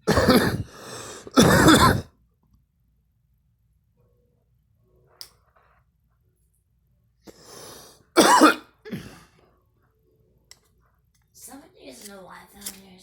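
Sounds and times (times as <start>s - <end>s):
girl coughing: 0.0s - 2.1s, 8.2s - 9.3s
rough breath: 0.4s - 2.0s, 7.3s - 8.1s.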